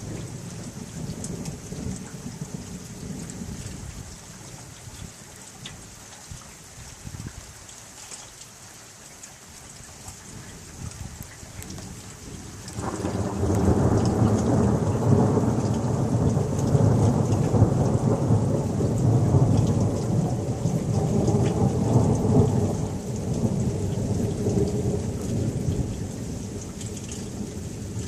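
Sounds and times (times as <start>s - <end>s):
heavy rain hiss: 8.4s - 28.0s
thunder rumbling: 10.9s - 28.0s.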